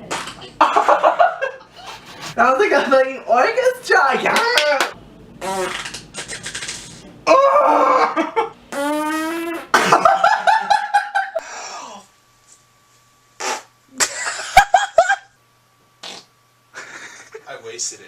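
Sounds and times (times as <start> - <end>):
man farting: 5.4 - 6.9, 8.7 - 10.1, 13.4 - 14.1, 16.0 - 16.3.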